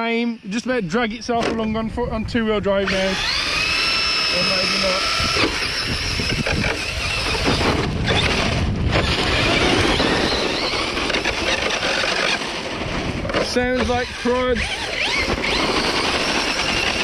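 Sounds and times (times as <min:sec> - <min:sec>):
rc truck motor whine: 0:02.8 - 0:17.0
rough grinding and scrabbling: 0:02.8 - 0:17.0.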